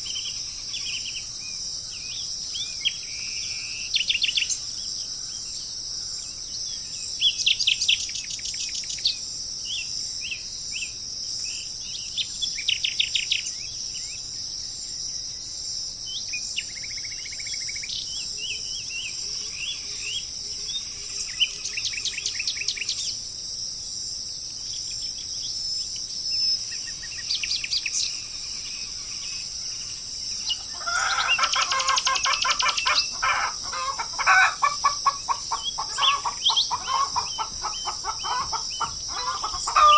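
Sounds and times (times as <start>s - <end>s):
songbirds trilling: 26.6s - 39.9s
bird call of quick repeated notes: 30.6s - 39.9s.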